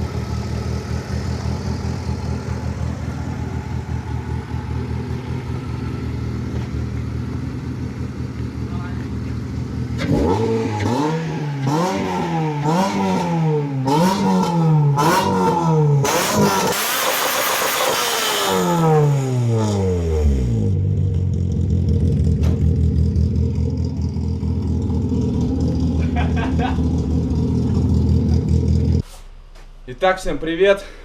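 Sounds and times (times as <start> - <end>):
car engine idling: 0.0 - 11.8, 20.6 - 31.0
car engine revving: 0.0 - 29.0
exhaust rush: 0.0 - 31.0.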